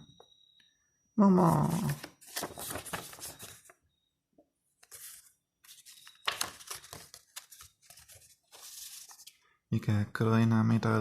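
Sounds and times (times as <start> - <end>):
paper and plastic rustling: 1.7 - 3.8, 4.8 - 9.4.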